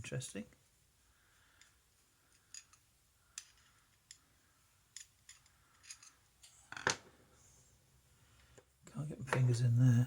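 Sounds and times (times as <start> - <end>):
small metallic clicks: 4.9 - 6.9.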